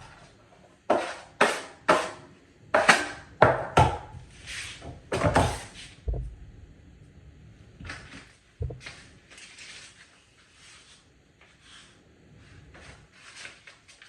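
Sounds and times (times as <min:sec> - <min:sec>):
taping knife scraping compound: 0:00.9 - 0:02.2, 0:09.4 - 0:12.0.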